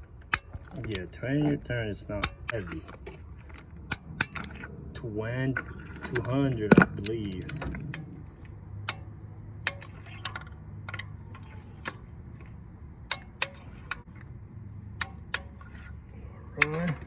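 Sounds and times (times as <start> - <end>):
torque wrench clicking: 0.0 - 1.5, 2.1 - 3.0, 3.8 - 4.7, 5.6 - 12.0, 13.1 - 14.1, 15.0 - 16.0.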